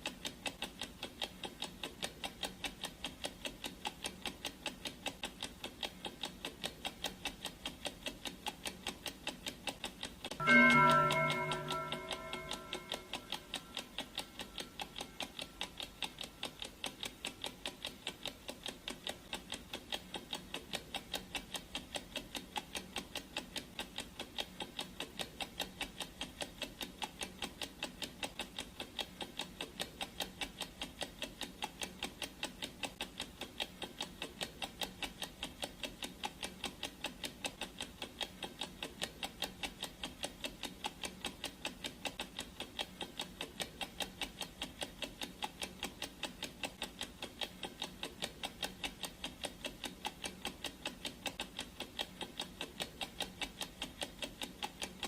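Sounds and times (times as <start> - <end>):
clock ticking: 0.0 - 55.0
gong ringing: 10.4 - 13.6.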